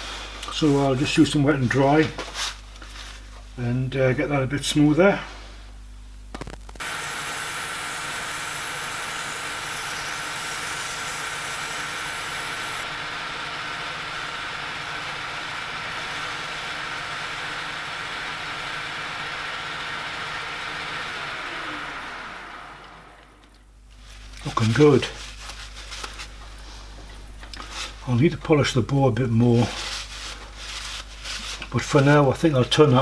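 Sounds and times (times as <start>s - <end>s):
abrasive paper hissing on metal: 6.8s - 12.9s, 29.6s - 32.3s
metal lathe whine: 6.8s - 23.4s.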